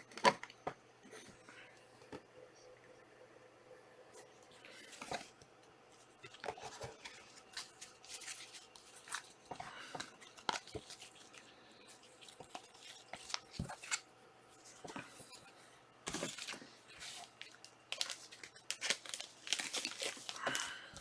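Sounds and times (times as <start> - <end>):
cards and wrappers rustling: 4.5 - 5.4, 6.0 - 21.0.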